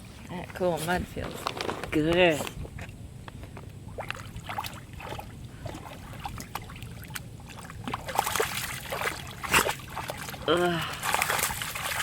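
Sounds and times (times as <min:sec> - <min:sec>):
dog sloshing in muddy water: 0:03.8 - 0:12.0.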